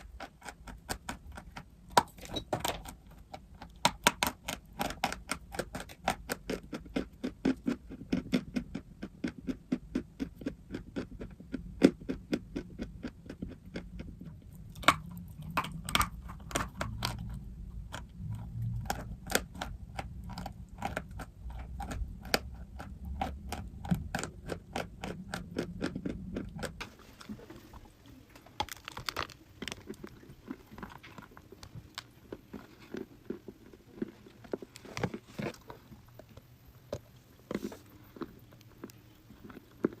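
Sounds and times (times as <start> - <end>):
low background hum: 0.0 - 40.0
chewing crunchy chalk: 2.9 - 27.4, 28.6 - 40.0.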